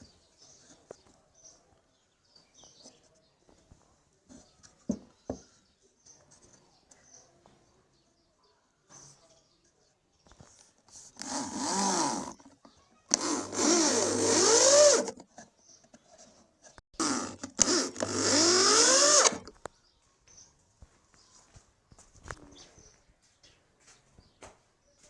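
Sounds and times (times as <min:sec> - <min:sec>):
power tool working wood: 0:11.2 - 0:12.4, 0:13.1 - 0:15.2, 0:17.0 - 0:19.5.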